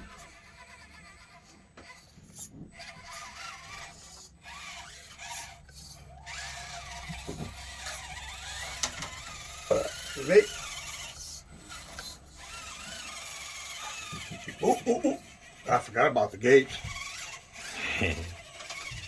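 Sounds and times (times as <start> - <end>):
small electric motor whining: 0.0 - 19.0.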